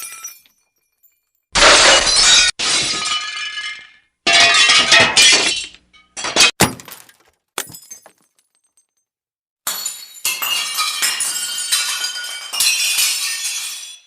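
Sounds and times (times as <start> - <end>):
glass smashing and tinkling: 0.0 - 9.0, 9.7 - 14.0.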